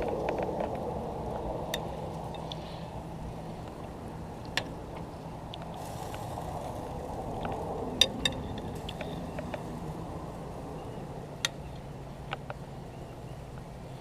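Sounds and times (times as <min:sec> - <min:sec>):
grill popping: 0:00.0 - 0:14.0
gas burner rushing: 0:05.5 - 0:11.6.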